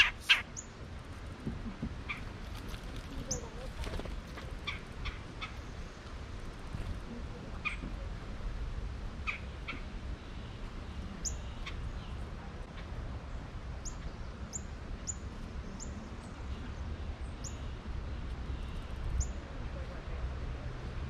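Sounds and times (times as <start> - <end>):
birds calling: 0.0 - 0.8, 3.2 - 6.0, 9.2 - 12.3.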